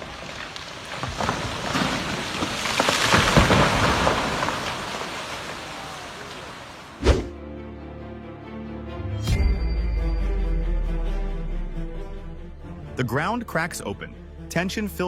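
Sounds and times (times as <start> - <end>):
heavy rain: 0.0 - 7.0
thunder rumbling: 1.1 - 6.2.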